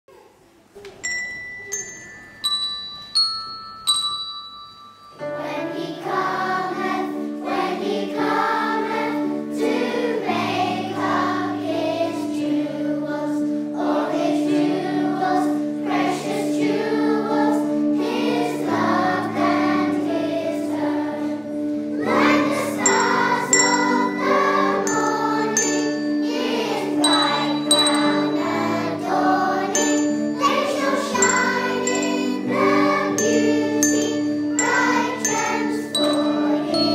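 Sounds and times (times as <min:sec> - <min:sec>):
bells ringing: 0:01.0 - 0:05.9, 0:22.2 - 0:36.9
choir singing: 0:05.2 - 0:36.9.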